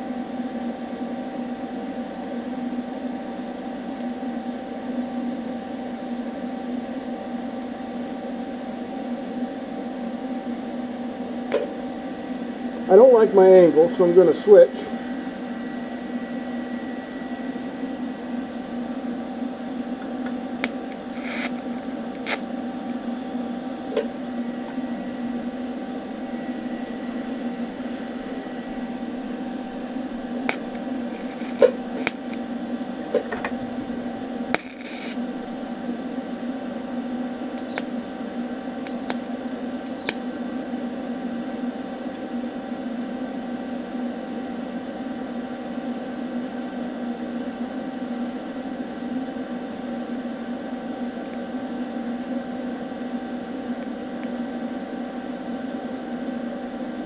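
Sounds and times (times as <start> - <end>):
welding arc buzzing hiss: 20.2 - 35.7.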